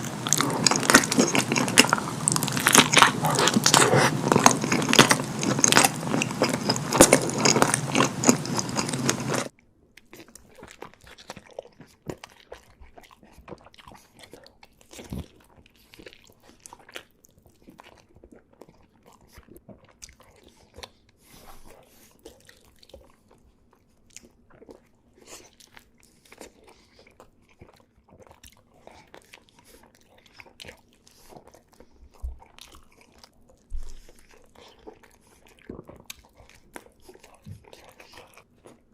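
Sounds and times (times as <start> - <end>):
mouth clicks and crackles: 0.0 - 23.4
crunchy biting and chewing: 0.0 - 38.9.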